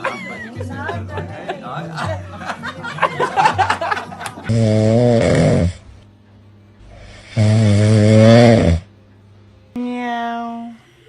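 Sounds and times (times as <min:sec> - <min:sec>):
pet snoring loudly: 0:04.5 - 0:06.0, 0:06.8 - 0:08.9.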